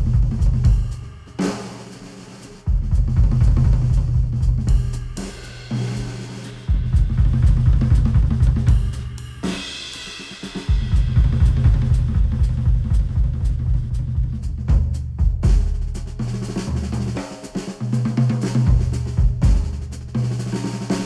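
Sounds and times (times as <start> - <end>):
instrumental music with drum beat: 0.0 - 21.0.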